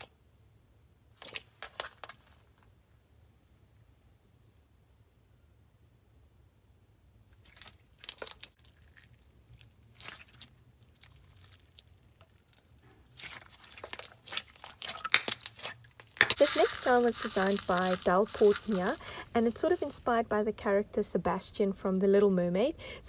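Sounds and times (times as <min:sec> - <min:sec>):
slime squished by hand: 0:07.4 - 0:19.0.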